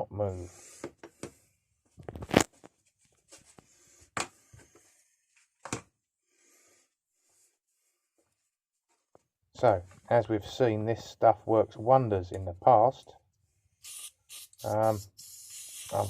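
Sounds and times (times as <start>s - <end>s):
faint short aerosol hisses: 13.8s - 16.0s.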